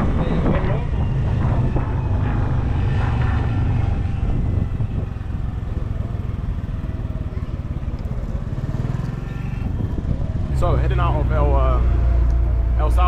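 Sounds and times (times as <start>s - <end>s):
vehicle engine low rumble: 0.0s - 13.0s.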